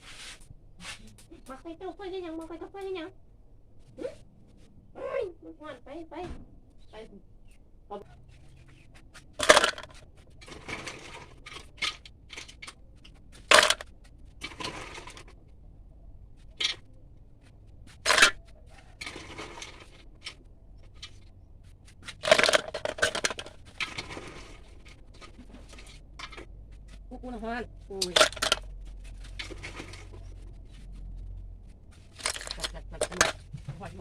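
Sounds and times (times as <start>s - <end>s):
scraping: 8.0s - 34.0s
kitchen utensils knocking: 22.2s - 24.0s, 28.0s - 28.6s, 32.2s - 34.0s.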